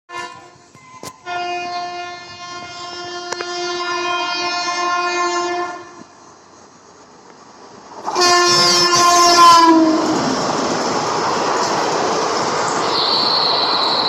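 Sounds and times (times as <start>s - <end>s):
locomotive air horn blast: 0.1s - 6.1s, 8.1s - 10.1s
train running noise: 0.1s - 14.0s.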